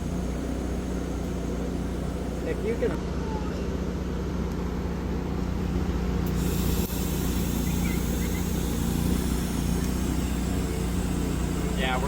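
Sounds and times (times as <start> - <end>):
engine humming: 0.0 - 12.0
steady hiss: 6.3 - 12.0.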